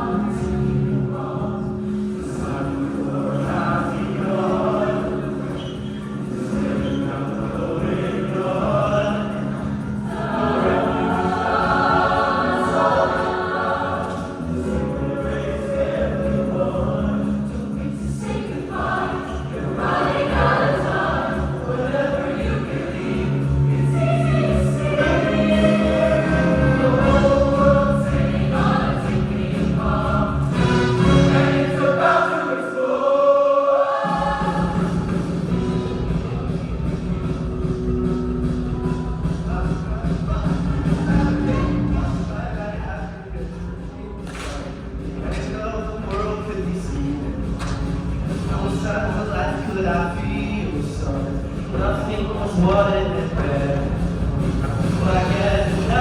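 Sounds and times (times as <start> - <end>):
instrumental accompaniment: 0.0 - 32.5
choir singing sustained chords: 0.0 - 44.1.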